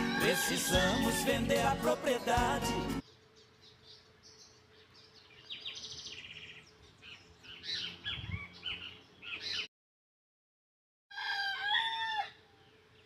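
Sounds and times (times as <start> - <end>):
songbirds chirping and singing: 0.0 - 9.7
bird trill: 3.0 - 9.7.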